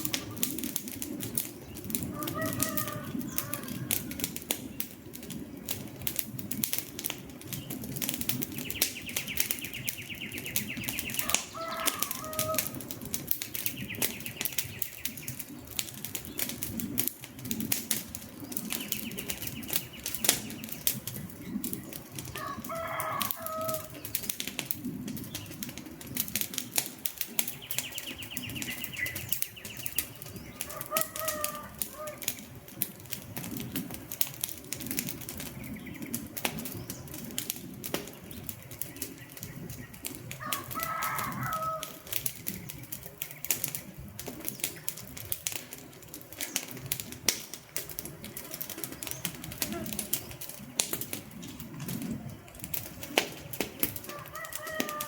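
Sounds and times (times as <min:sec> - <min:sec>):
campfire crackling and popping: 0:00.0 - 0:55.0
low rush of flames: 0:00.0 - 0:55.0
bird calling: 0:01.8 - 0:04.3, 0:08.5 - 0:12.9, 0:27.3 - 0:32.5, 0:53.7 - 0:55.0.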